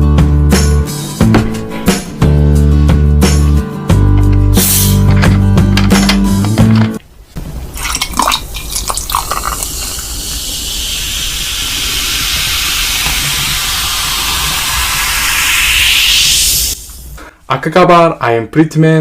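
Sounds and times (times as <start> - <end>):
music: 0.0 - 7.0
watery hiss: 8.9 - 17.2.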